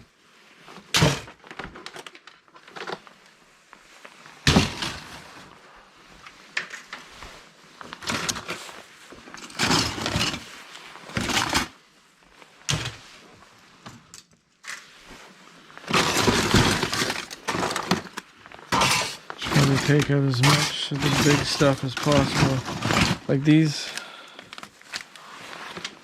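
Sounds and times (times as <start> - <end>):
laptop parts clattering: 15.9 - 25.1.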